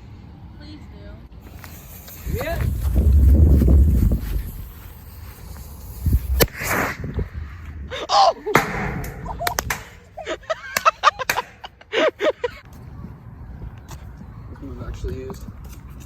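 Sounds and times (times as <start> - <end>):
firework hiss: 1.4 - 7.6
firework bang: 5.6 - 7.3, 8.5 - 10.0.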